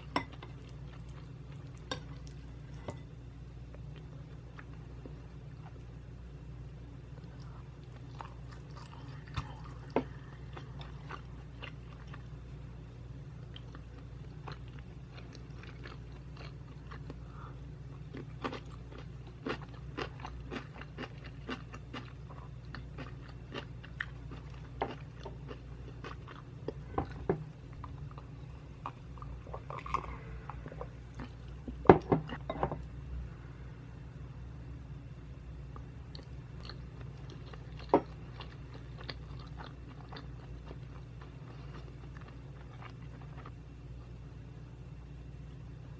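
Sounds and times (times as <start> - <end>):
steady low hum: 0.0 - 45.9
close-miked chewing: 7.2 - 12.4, 13.4 - 31.8, 35.8 - 43.6.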